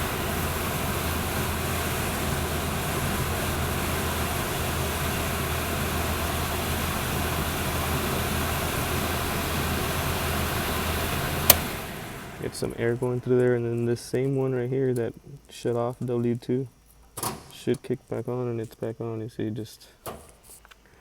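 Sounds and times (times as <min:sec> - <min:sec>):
blower fan rush of air: 0:00.0 - 0:14.1
low motor hum: 0:00.0 - 0:14.4.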